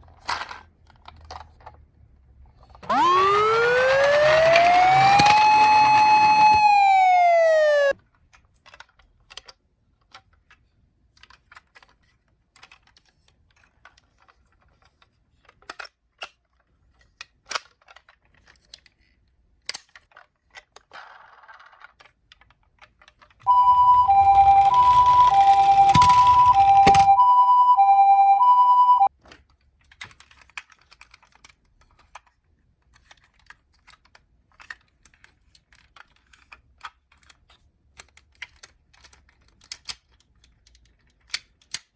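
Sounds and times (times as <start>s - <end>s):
toy ambulance two-tone siren: 2.8s - 8.0s, 23.5s - 29.1s
toy siren gliding down: 2.9s - 8.0s, 23.5s - 29.1s.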